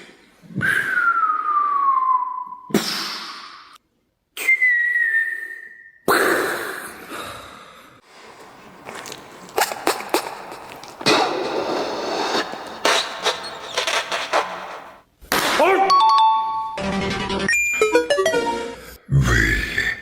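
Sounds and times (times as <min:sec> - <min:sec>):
mouth whistle sliding downward: 0:00.6 - 0:02.6.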